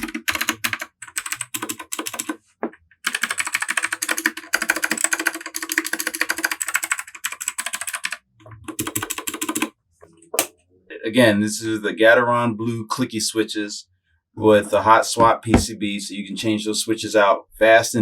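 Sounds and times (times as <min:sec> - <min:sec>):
clicky keyboard typing: 0:00.0 - 0:02.4, 0:03.1 - 0:09.7.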